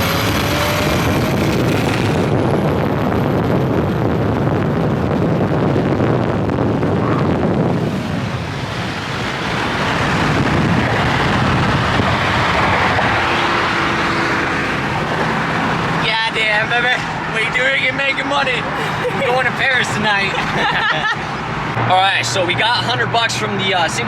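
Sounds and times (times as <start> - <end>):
wind buffeting microphone: 0.0 - 17.6
cars racing engine and road noise: 0.0 - 24.0.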